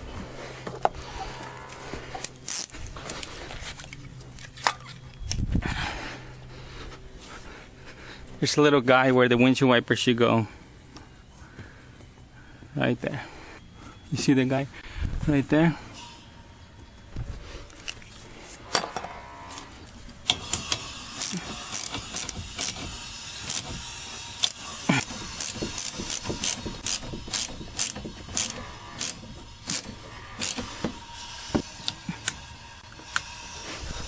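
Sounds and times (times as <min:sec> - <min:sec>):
ratchet wrench clicking: 0:02.5 - 0:02.7, 0:20.3 - 0:30.7.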